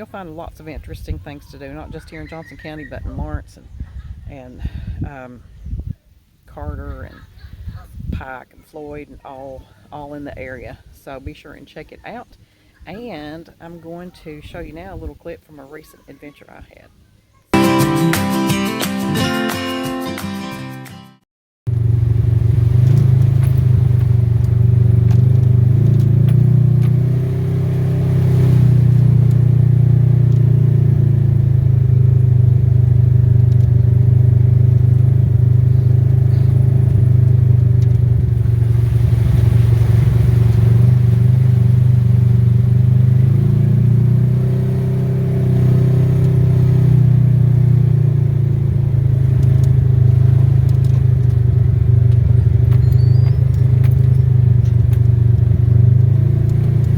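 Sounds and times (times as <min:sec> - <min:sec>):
vehicle engine running: 0:21.7 - 0:56.9.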